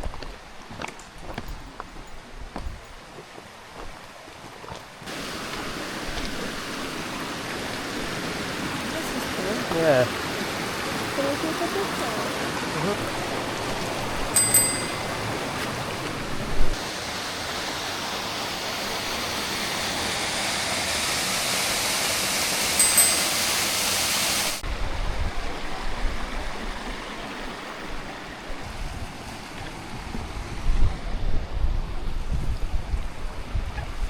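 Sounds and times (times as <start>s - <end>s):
stream water rushing: 0.0s - 34.0s
high ringing tone: 14.4s - 15.5s, 22.8s - 23.9s
wind buffeting microphone: 28.5s - 34.0s.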